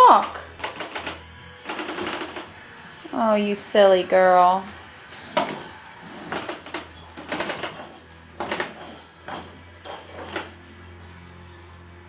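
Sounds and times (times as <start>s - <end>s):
toys clattering: 5.3s - 10.9s.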